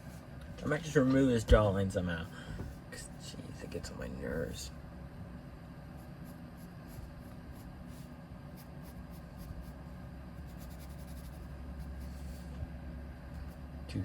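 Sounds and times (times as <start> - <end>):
low steady hum: 0.0 - 14.0
drawing tool scratching paper: 6.0 - 9.8, 10.4 - 12.3.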